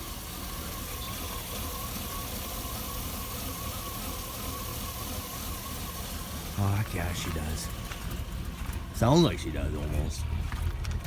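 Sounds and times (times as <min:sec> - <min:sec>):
engine idling: 0:00.0 - 0:11.0.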